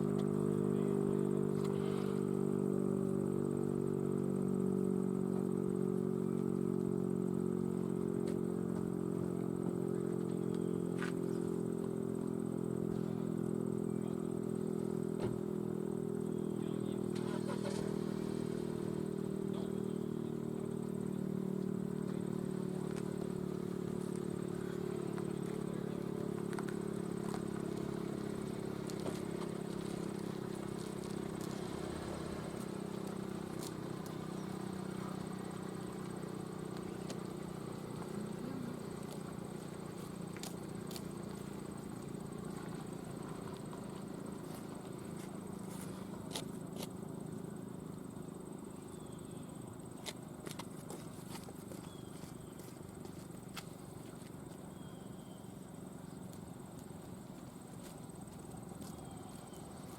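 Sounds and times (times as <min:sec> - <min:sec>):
warning siren steady low tone: 0:58.5 - 0:59.9.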